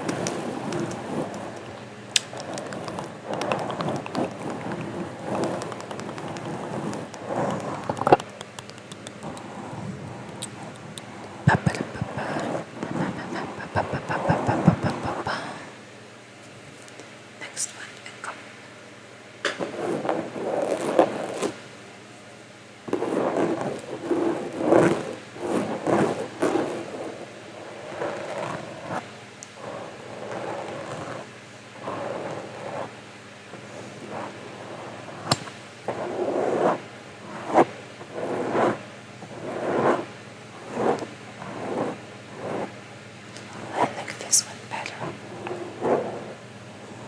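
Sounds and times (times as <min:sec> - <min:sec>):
mouth clicks: 0:01.6 - 0:09.5
close whispering: 0:07.4 - 0:15.8, 0:17.4 - 0:18.5, 0:43.5 - 0:45.2.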